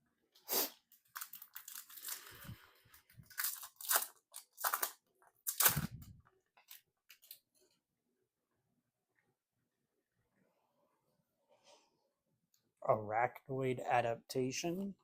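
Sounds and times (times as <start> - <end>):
foil wrapper tearing and crinkling: 0.9 - 7.4.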